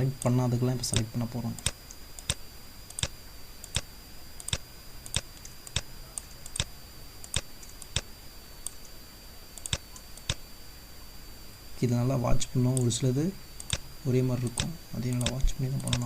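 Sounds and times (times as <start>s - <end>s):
faint high whine: 0.0s - 16.0s
computer mouse clicking: 0.2s - 9.0s, 9.6s - 10.4s, 12.7s - 12.9s, 13.6s - 13.9s, 14.5s - 16.0s.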